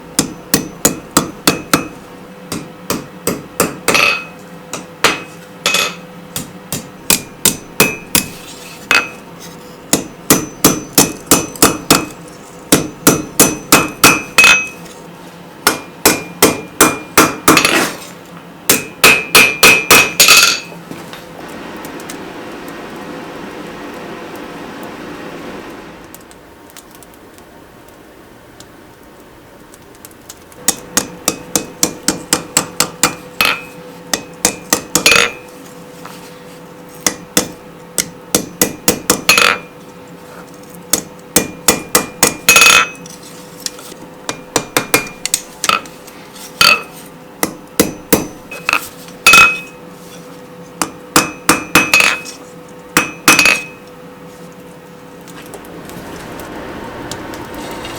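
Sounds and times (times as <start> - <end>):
hammer striking steel on anvil: 0.2 - 9.2, 9.9 - 14.9, 15.6 - 18.0, 18.7 - 20.8, 30.6 - 35.5, 37.0 - 39.8, 40.9 - 43.1, 44.3 - 45.9, 46.6 - 49.8, 50.8 - 52.4, 53.0 - 53.9.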